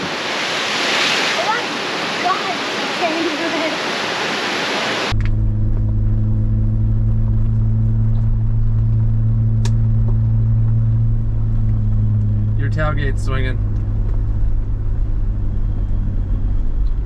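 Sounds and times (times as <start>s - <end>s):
waterfall rushing: 0.0s - 5.1s
car driving heard from cabin: 5.1s - 17.0s.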